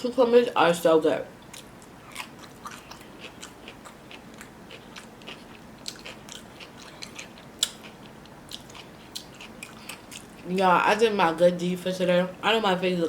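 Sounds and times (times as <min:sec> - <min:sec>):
person chewing crunchy food: 0:01.4 - 0:10.4.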